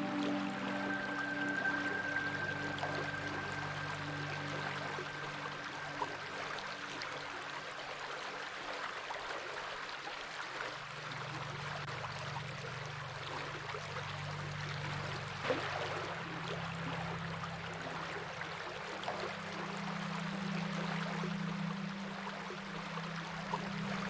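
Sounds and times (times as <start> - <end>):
low steady hum: 0.0 - 9.2, 10.7 - 24.0
stream water flowing: 0.0 - 24.0.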